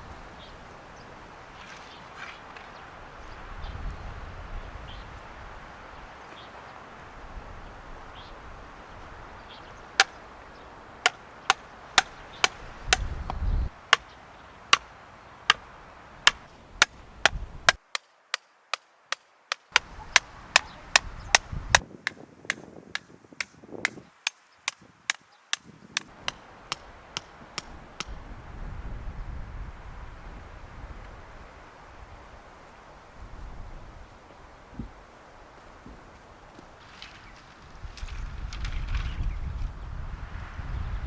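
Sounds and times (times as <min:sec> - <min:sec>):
sharp evenly spaced strikes: 0:16.3 - 0:21.1.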